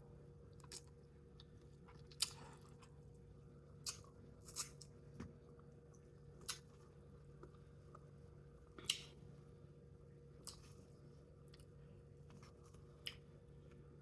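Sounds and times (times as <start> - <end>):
faint steady hum: 0.0 - 14.0
person chewing food: 0.5 - 3.2.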